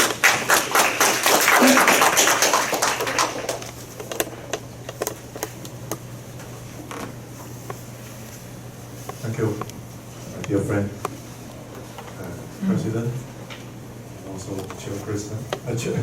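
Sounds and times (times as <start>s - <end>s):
audience applause: 0.0s - 3.7s.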